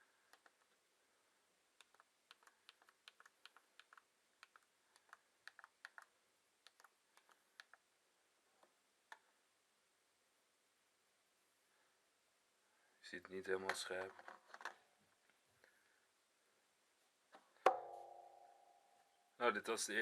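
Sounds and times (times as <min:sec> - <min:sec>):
small keyboard keys clicking: 0:00.3 - 0:00.7, 0:01.8 - 0:07.8.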